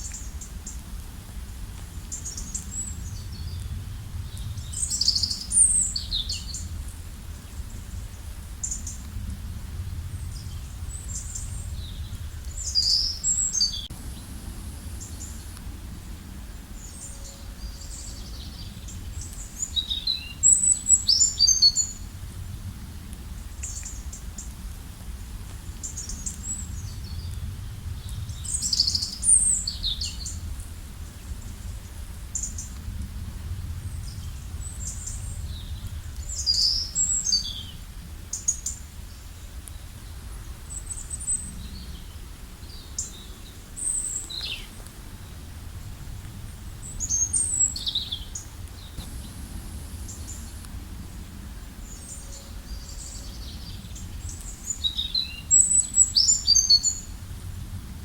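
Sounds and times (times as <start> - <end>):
steady low rumble: 0.0 - 38.9, 41.3 - 55.8, 56.9 - 58.0
songbirds chirping and trilling: 2.1 - 9.1, 9.8 - 22.1, 46.8 - 57.2.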